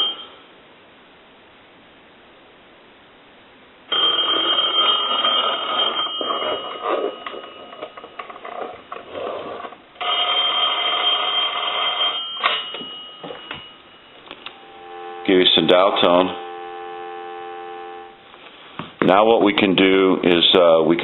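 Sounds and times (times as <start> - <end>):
telephone ringing: 0.0 - 0.4, 3.9 - 18.2.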